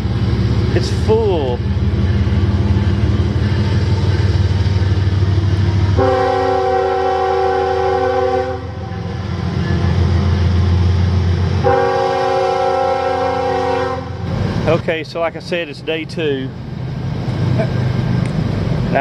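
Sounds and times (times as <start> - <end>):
train rumbling past: 0.0 - 19.0
train air horn chord: 5.9 - 9.0, 11.6 - 14.2.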